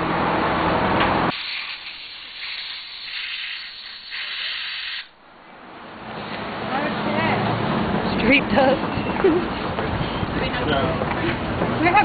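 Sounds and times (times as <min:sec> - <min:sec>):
compressed air blasting from nozzle: 0:01.3 - 0:05.2.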